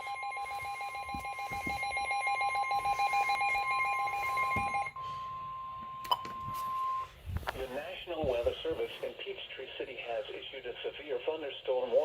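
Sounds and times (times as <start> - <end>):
rapidly pulsing beep: 0.0 - 7.1
steady alarm tone: 0.0 - 7.2.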